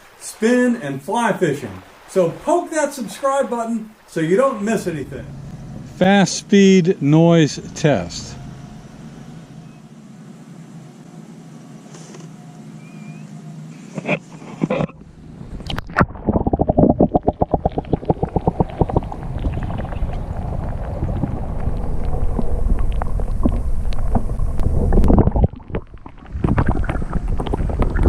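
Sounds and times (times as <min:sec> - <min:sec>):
muffled underwater water burbling: 0:03.0 - 0:09.9, 0:14.6 - 0:28.0
steady low underwater rumble: 0:04.3 - 0:11.4, 0:15.0 - 0:28.0.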